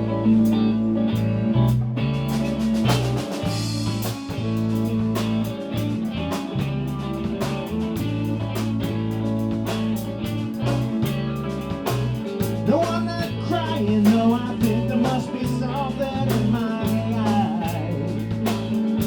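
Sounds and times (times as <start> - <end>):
bass notes: 0.0 - 19.0
electric guitar chords: 0.0 - 19.0
drum kit beat: 0.4 - 19.0.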